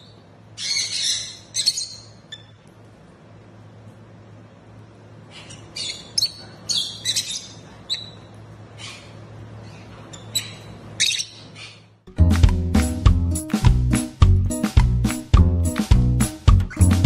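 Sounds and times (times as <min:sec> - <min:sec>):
parrot chirping and squawking: 0:00.0 - 0:02.6, 0:05.3 - 0:12.0
faint steady hum: 0:00.0 - 0:16.6.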